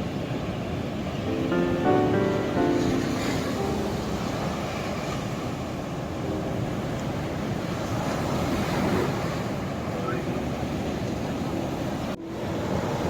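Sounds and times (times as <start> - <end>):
ocean surf washing in: 0.0 - 13.0
faint soft music notes: 1.3 - 8.4.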